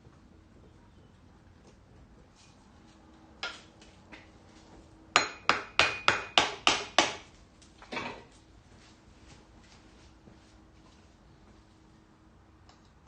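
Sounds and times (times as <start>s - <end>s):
hammer striking metal engine: 5.2s - 7.2s.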